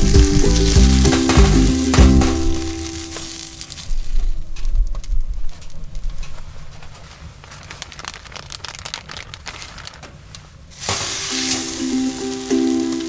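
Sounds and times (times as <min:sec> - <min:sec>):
ukulele music: 0:00.0 - 0:03.8, 0:11.1 - 0:13.0
food sizzling in a frying pan: 0:00.0 - 0:03.9, 0:10.8 - 0:13.0.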